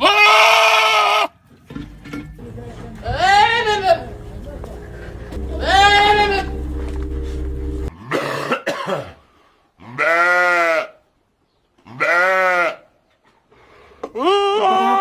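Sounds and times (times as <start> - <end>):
low steady hum: 2.4 - 7.9
goat bleating: 3.0 - 4.2, 5.5 - 6.6.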